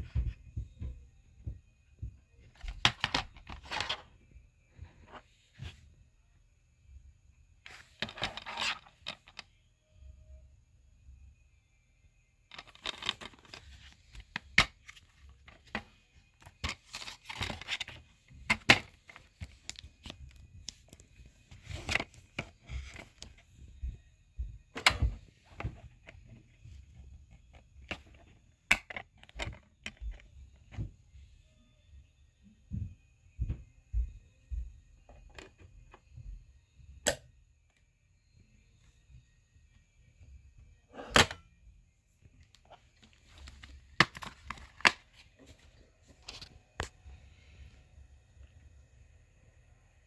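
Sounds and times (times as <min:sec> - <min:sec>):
crinkling and rustling: 0:02.4 - 0:05.8, 0:07.7 - 0:09.5, 0:12.5 - 0:24.0, 0:42.4 - 0:46.9.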